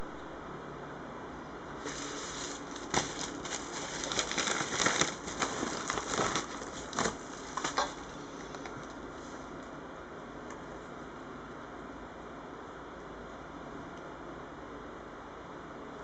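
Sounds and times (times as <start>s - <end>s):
packaging crinkling and rustling: 1.8s - 9.0s.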